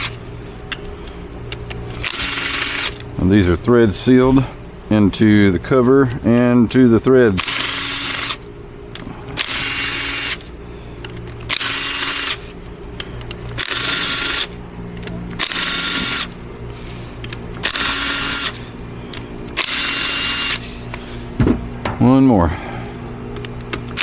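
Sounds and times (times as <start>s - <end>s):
power ratchet whining: 0.0s - 3.6s, 7.1s - 21.3s, 22.6s - 24.0s.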